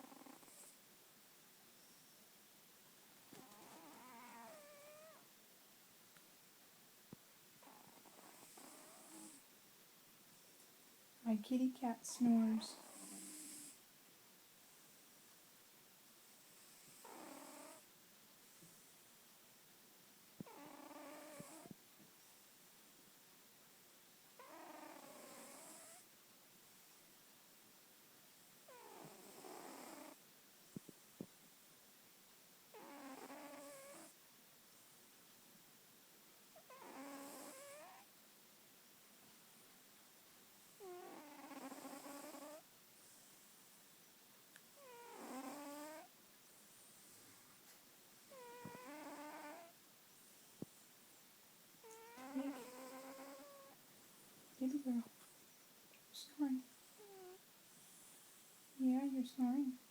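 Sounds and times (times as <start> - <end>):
cat snoring: 0.0 - 0.8, 3.3 - 5.2, 7.6 - 9.5, 12.6 - 13.8, 16.5 - 17.9, 20.4 - 21.8, 24.4 - 26.1, 28.7 - 30.2, 32.7 - 34.2, 36.6 - 38.1, 40.8 - 43.3, 44.8 - 46.1, 48.3 - 49.8, 51.8 - 53.8, 56.8 - 58.5.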